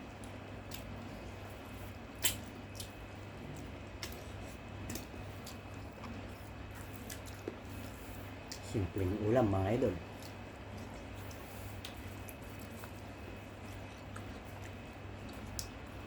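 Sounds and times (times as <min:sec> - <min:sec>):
steady low hum: 0:00.0 - 0:16.0
chewing and utensil clicks: 0:02.2 - 0:06.2, 0:10.1 - 0:15.8.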